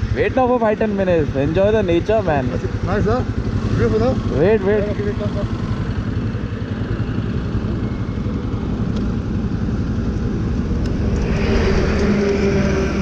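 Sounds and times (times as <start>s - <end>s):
motorcycle engine rumbling: 0.0s - 13.0s.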